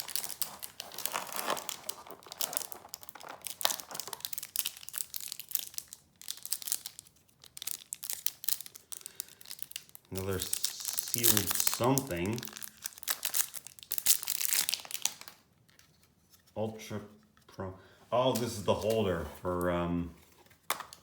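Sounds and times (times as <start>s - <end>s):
plastic packaging crinkling: 0.0s - 16.5s.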